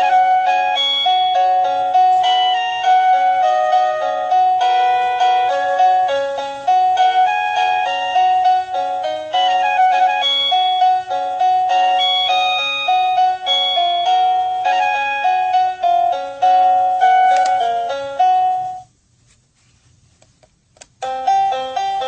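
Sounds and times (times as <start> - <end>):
doorbell chime electronic melody: 0.0 - 18.9, 21.0 - 22.0
clicks: 20.2 - 21.0.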